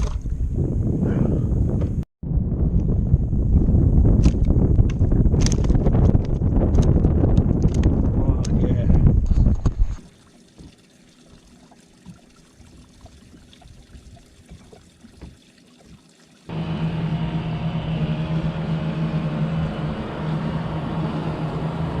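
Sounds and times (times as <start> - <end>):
water sounds: 0.0 - 0.5, 9.2 - 22.0
engine drone: 16.5 - 22.0.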